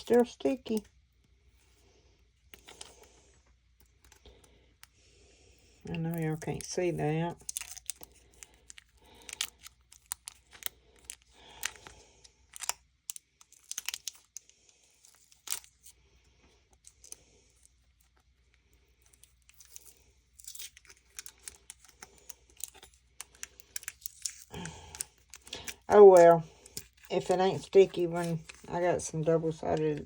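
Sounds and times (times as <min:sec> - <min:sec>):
plastic packaging crinkling: 0:05.9 - 0:16.0, 0:16.7 - 0:30.0.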